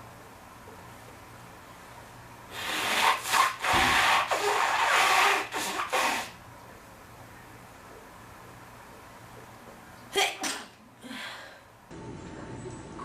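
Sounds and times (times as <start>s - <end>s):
person blowing nose: 2.5s - 6.4s.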